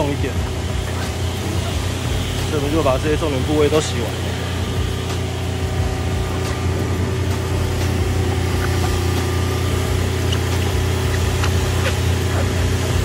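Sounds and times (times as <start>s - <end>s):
machinery humming: 0.0s - 13.0s.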